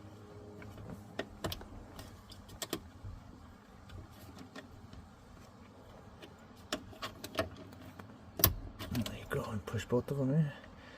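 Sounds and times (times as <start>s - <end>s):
light clicks and knocks: 0.5s - 9.6s.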